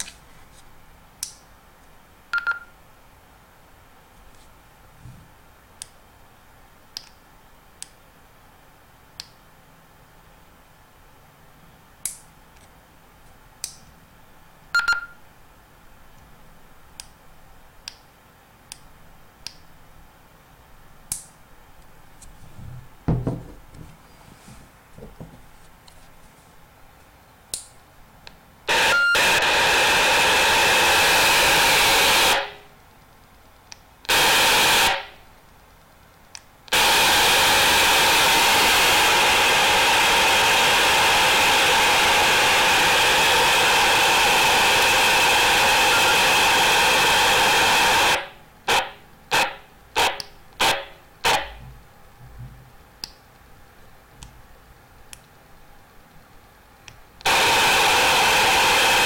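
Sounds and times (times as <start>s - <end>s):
soft thump: 22.6s - 23.6s
radio speaker hissing static: 34.1s - 35.2s, 36.8s - 51.6s, 57.2s - 59.0s.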